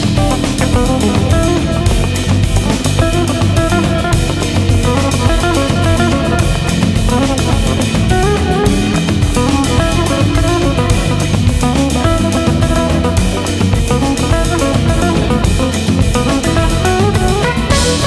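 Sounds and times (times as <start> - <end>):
bass guitar: 0.0 - 18.0
drum kit: 0.0 - 18.0
electric guitar: 0.0 - 18.0.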